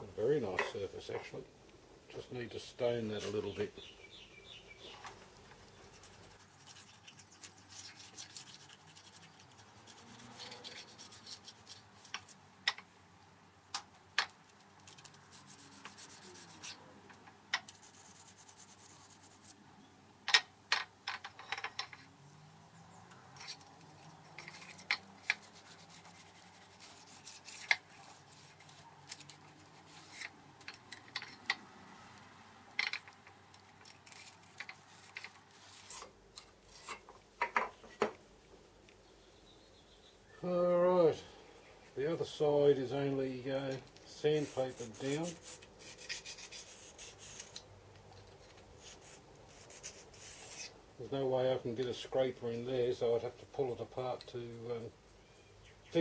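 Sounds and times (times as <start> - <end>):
sharpening stone scraping metal: 44.4 - 47.6, 48.8 - 50.8.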